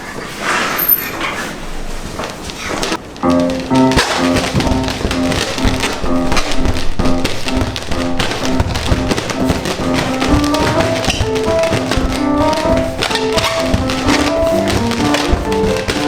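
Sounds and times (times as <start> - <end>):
light melody over tapping beat: 3.2 - 16.0.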